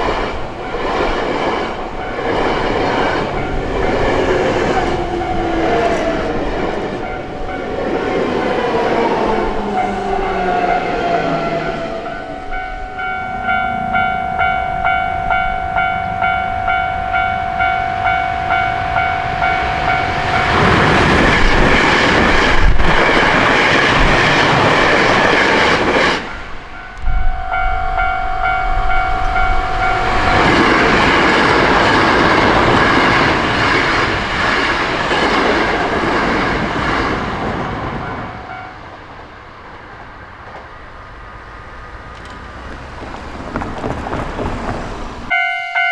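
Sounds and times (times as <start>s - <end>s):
electric train rushing past: 0.0s - 45.9s
traffic noise: 0.0s - 45.9s
level crossing alarm bell: 2.0s - 22.3s, 26.3s - 34.6s, 42.5s - 45.9s.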